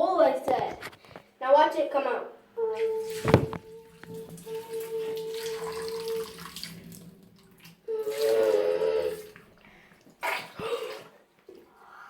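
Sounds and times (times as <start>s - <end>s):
water running and splashing: 2.6s - 11.2s.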